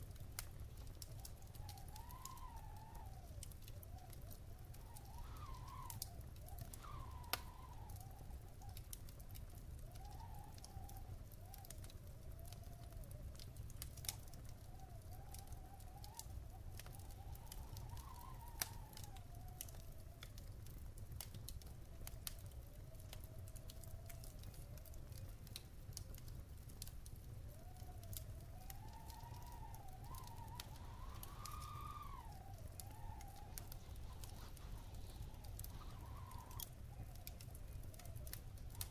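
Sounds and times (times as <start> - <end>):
fire pops: 0.0 - 38.9
wood fire crackling: 0.0 - 38.9
faint wavering whistle: 0.5 - 13.4, 14.0 - 20.4, 27.4 - 38.9.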